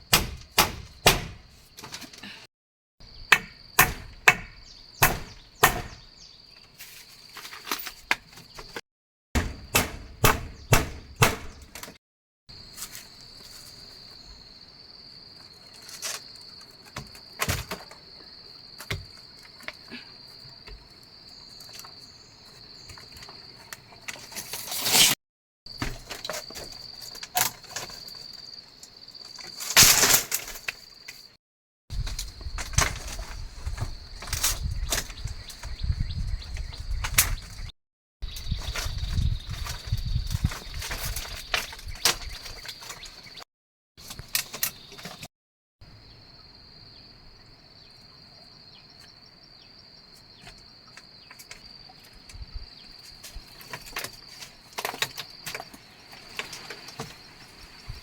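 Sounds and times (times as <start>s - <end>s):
insects droning: 0.0s - 8.8s, 12.5s - 25.1s, 25.7s - 43.4s, 44.0s - 58.0s
sharp knocks: 9.4s - 11.7s.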